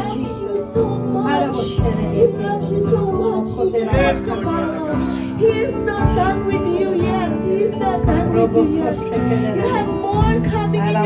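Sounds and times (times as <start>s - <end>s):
electronic keyboard chords: 0.0s - 11.0s
person singing: 0.0s - 11.0s.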